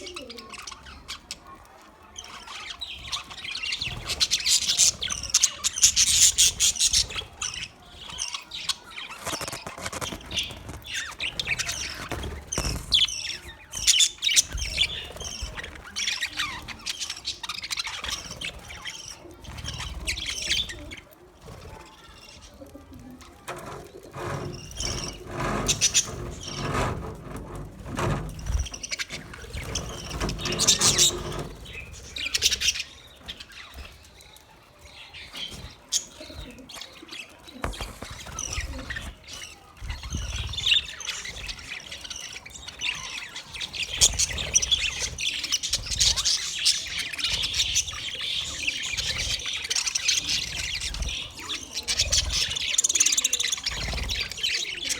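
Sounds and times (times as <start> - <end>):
budgerigars chirping: 24.2 - 33.8, 40.0 - 54.9.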